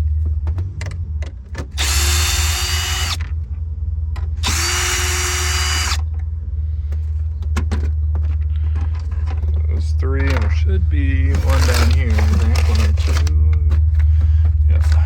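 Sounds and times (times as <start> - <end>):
power drill whining: 1.8 - 3.2, 4.4 - 6.0, 11.4 - 13.3.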